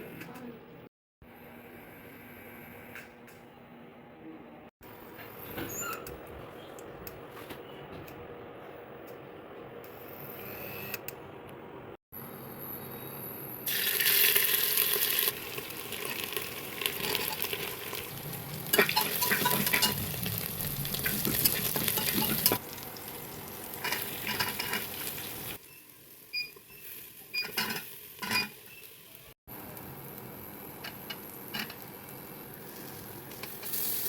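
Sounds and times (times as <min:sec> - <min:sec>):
food sizzling in a pan: 0:13.7 - 0:34.0
spoon scraping a pan: 0:18.8 - 0:20.0, 0:23.8 - 0:25.2, 0:26.4 - 0:28.9.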